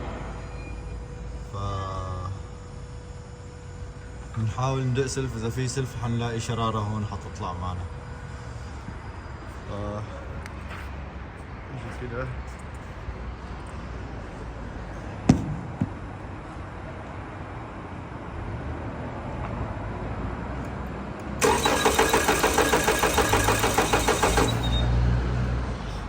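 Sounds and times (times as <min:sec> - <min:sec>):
starter cranking car engine: 0:21.4 - 0:25.0.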